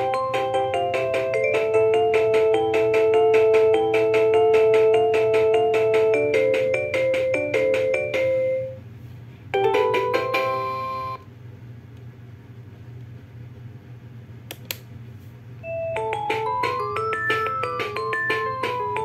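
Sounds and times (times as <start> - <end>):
electronic ringtone melody: 0.0 - 8.8, 9.6 - 11.2, 15.6 - 19.0.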